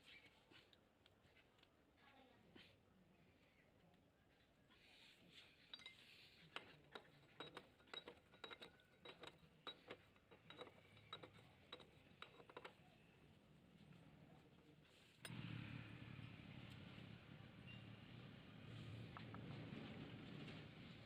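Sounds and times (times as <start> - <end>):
metallic clinks of tools: 5.7 - 12.8.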